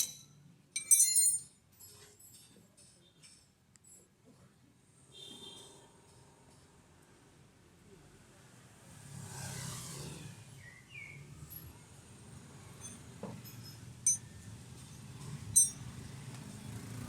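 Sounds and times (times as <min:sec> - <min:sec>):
vehicle passing: 0:08.9 - 0:10.6, 0:15.0 - 0:17.0
low traffic hum: 0:09.8 - 0:17.0.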